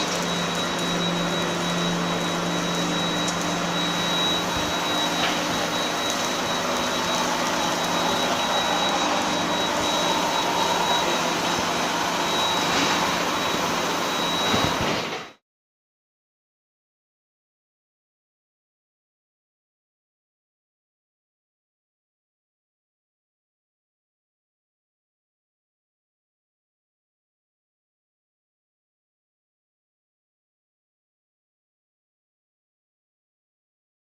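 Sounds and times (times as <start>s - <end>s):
machinery whine and hum: 0.0s - 15.4s.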